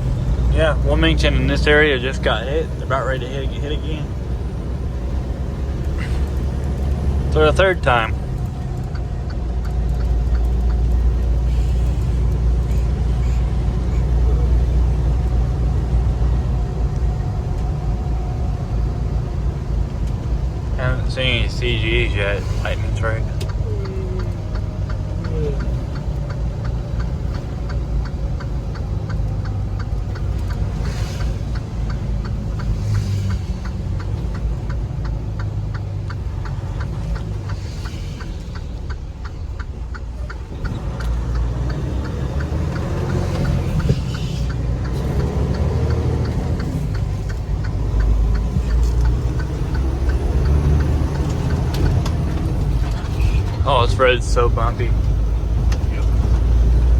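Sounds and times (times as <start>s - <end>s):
car road rumble: 0.0s - 56.9s
fast even ticking: 0.0s - 56.9s.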